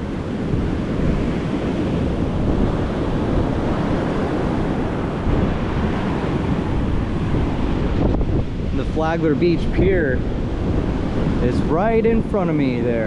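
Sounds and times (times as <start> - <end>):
ocean surf breaking: 0.0 - 13.0
wind buffeting microphone: 0.0 - 13.0.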